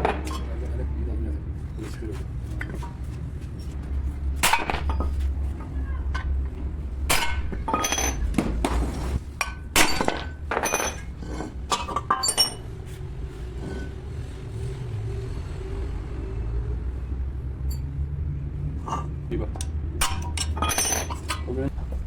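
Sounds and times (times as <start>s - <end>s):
metal tools clinking: 0.0s - 0.8s, 7.4s - 8.4s, 9.2s - 12.7s, 18.8s - 21.8s.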